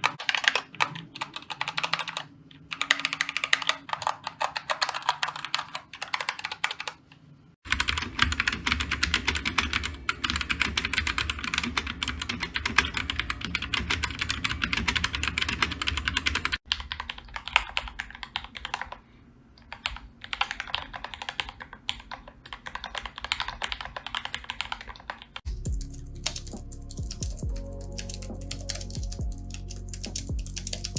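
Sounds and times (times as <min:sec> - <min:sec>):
fast typing on keyboard: 0:00.0 - 0:07.0, 0:07.7 - 0:19.0, 0:19.6 - 0:30.9
low background music: 0:25.5 - 0:30.9.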